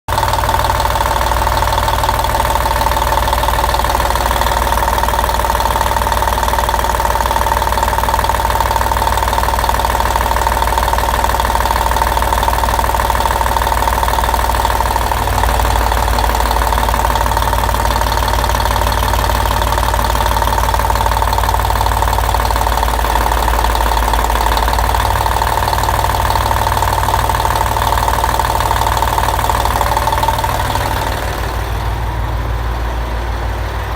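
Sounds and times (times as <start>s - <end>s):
diesel engine running with knock: 0.1s - 33.9s.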